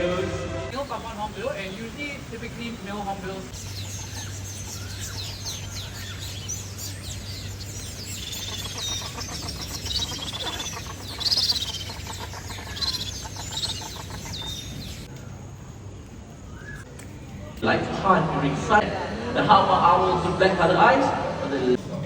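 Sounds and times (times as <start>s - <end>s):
low steady hum: 0.0s - 22.0s
birds chirping and squawking: 0.7s - 15.1s.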